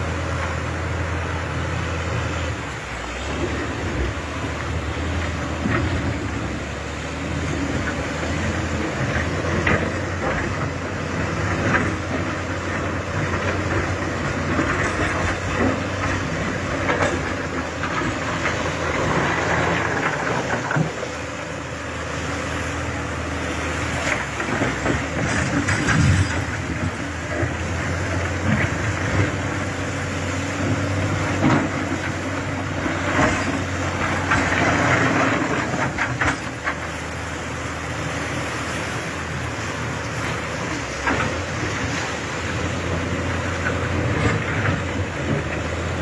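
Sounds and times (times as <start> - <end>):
diesel engine running: 0.0 - 46.0.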